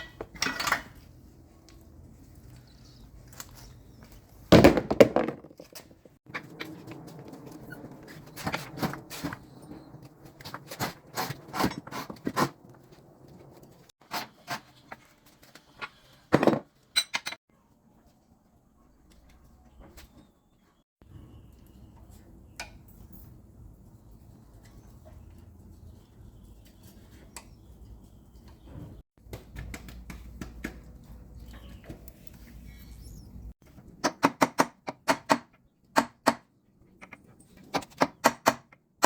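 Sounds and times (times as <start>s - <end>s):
hard objects knocking and clanking: 4.5s - 6.5s, 16.3s - 17.4s.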